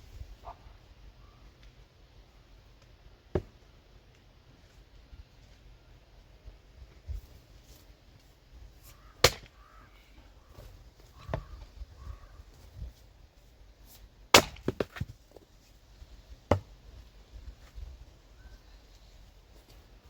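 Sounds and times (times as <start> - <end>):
axe chopping firewood: 3.3 - 3.6, 9.2 - 9.6, 14.3 - 15.1, 16.5 - 16.8.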